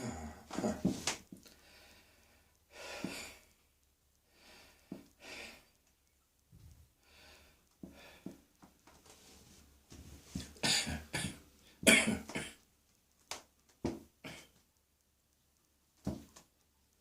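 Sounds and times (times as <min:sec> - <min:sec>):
person coughing harshly: 0:10.6 - 0:12.6.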